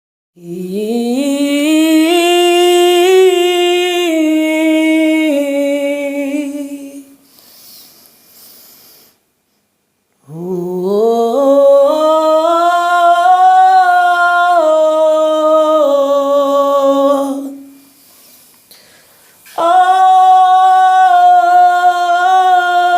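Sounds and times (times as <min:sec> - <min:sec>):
person humming: 0:10.2 - 0:17.8.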